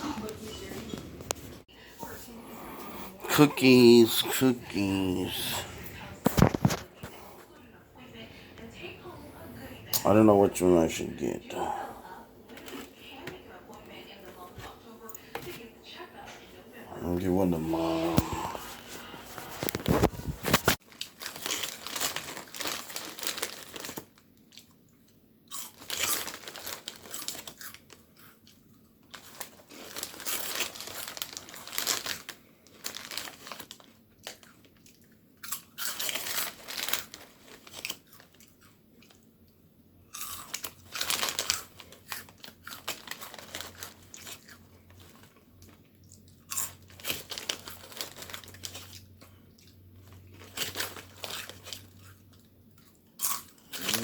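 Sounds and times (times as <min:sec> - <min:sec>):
cookies crunching: 0:02.4 - 0:07.8, 0:16.9 - 0:54.0
plastic wrapper crinkling: 0:03.3 - 0:07.1, 0:17.1 - 0:24.8, 0:25.6 - 0:28.0, 0:29.1 - 0:34.9, 0:35.8 - 0:38.4, 0:40.5 - 0:45.9, 0:46.7 - 0:49.4, 0:50.0 - 0:52.4.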